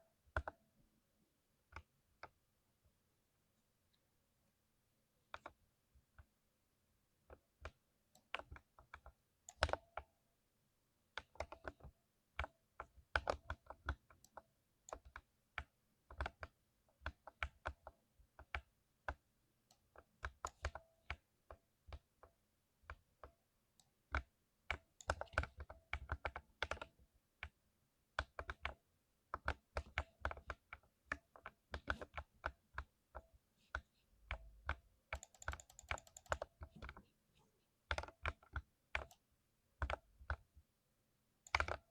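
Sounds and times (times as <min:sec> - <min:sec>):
mechanical keyboard typing: 0:07.4 - 0:09.8, 0:11.2 - 0:17.8, 0:23.8 - 0:27.6, 0:28.2 - 0:28.8, 0:29.4 - 0:37.0, 0:37.9 - 0:39.2, 0:41.4 - 0:41.9.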